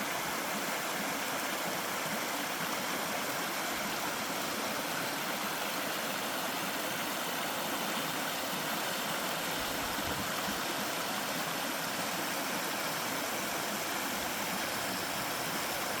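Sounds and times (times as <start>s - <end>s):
waterfall water rushing: 0.0s - 16.0s.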